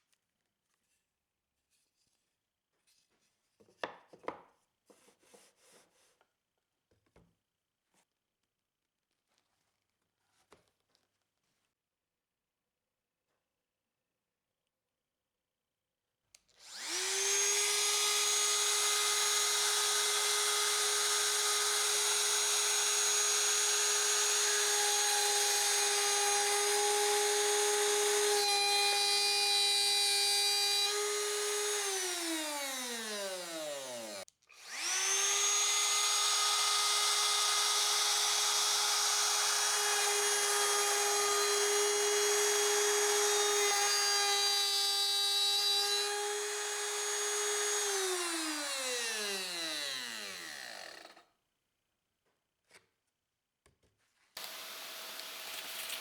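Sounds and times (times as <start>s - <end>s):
router high whine: 16.6s - 51.2s.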